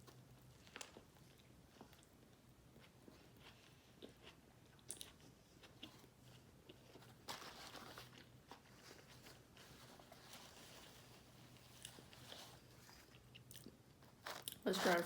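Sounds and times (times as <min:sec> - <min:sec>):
chewing and biting food: 0:00.0 - 0:07.3.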